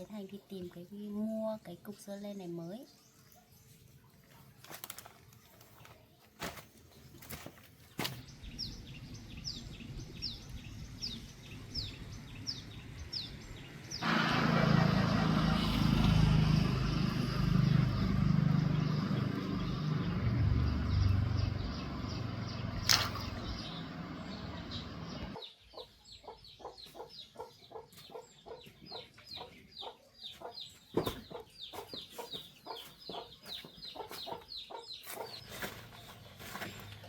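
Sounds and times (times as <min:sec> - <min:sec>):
motor vehicle rumbling: 0:08.2 - 0:25.4
chickens calling: 0:20.8 - 0:36.8.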